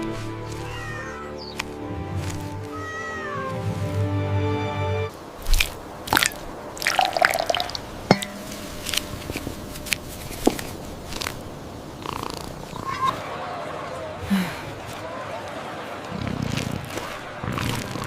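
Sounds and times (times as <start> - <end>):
cartoon cat meowing: 0.7 - 1.3, 2.7 - 3.6.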